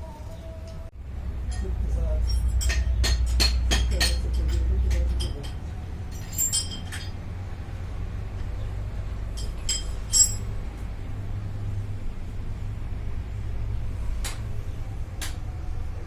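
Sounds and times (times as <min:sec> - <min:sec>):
low steady hum: 0:00.0 - 0:16.0
metal pieces clinking: 0:05.2 - 0:07.2, 0:09.4 - 0:10.5.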